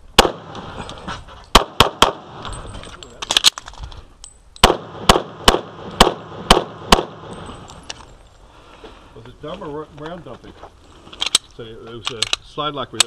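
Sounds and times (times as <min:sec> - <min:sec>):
pistol shots: 0:00.1 - 0:00.8, 0:01.5 - 0:02.5, 0:04.6 - 0:07.4
sharp clicks: 0:11.2 - 0:13.0.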